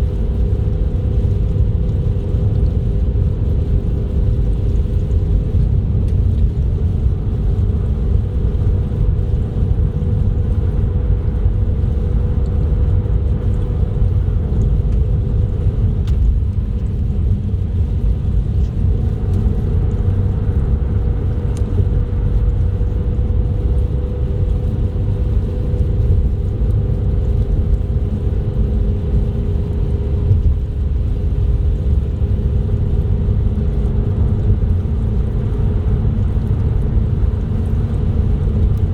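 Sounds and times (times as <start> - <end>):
car engine and tyres rumbling: 0.0 - 38.9
constant two-tone hum: 0.0 - 38.9.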